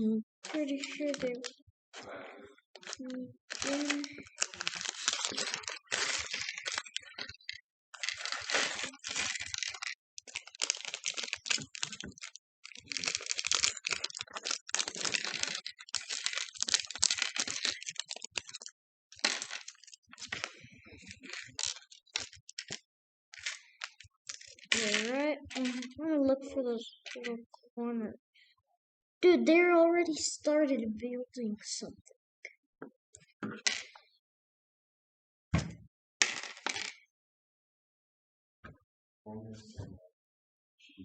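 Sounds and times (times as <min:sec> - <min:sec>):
plastic toy bricks clattering: 0:00.4 - 0:01.5, 0:02.8 - 0:26.0, 0:36.2 - 0:37.0.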